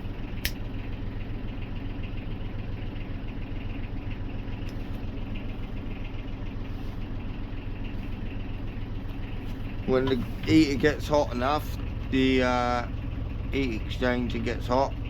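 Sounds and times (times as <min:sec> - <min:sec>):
motor droning: 0:04.4 - 0:15.0.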